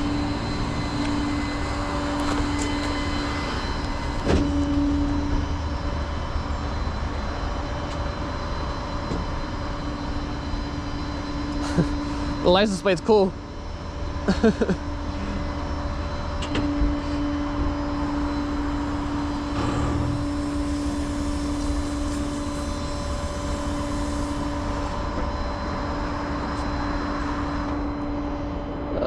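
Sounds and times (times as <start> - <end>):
steady hum: 0.0 - 29.0.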